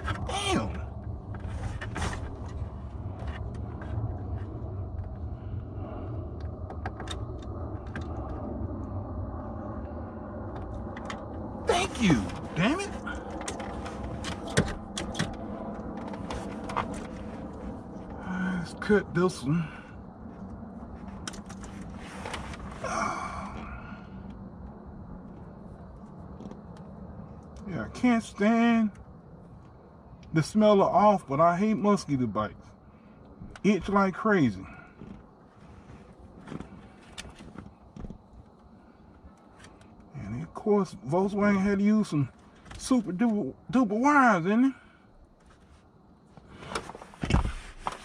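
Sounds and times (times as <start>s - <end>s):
steady low hum: 0.0s - 48.0s
steady low rumble: 0.0s - 48.0s
breathy sigh: 22.8s - 24.2s.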